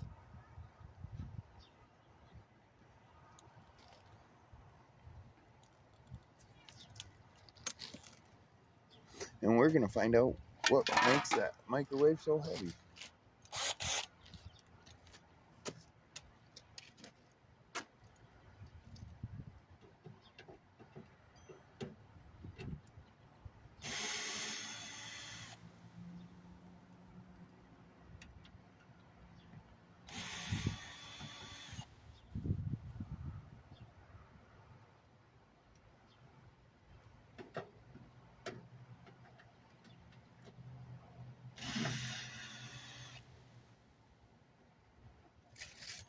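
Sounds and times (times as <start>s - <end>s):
handling clicks and knocks: 10.6s - 12.6s
power tool running: 30.1s - 31.9s, 41.6s - 43.2s.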